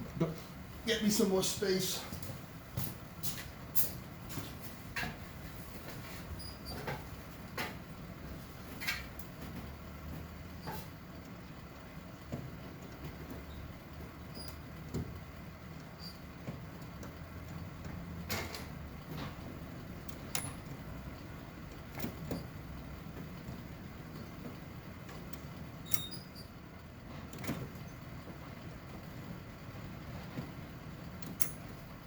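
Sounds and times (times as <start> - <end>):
steady low hum: 0.0 - 32.0
light clicks and knocks of hand work: 2.1 - 26.3.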